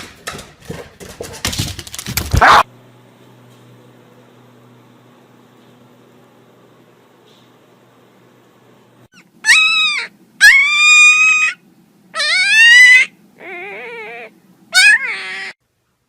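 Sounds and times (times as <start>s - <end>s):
pet whining: 9.1s - 15.6s.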